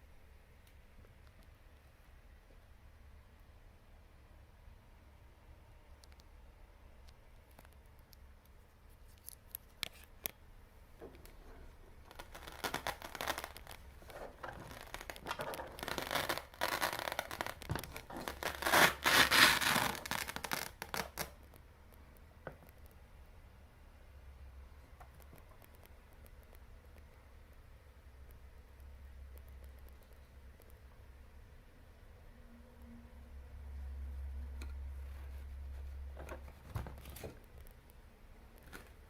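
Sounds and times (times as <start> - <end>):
scraping and rustling: 11.0 - 21.2.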